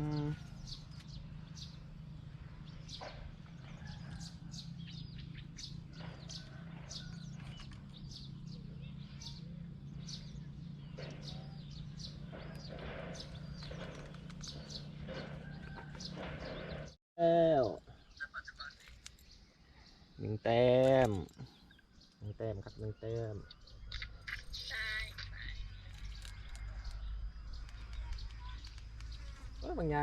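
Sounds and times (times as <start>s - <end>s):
steady low hum: 0.0s - 17.0s
birds chirping: 0.0s - 30.0s.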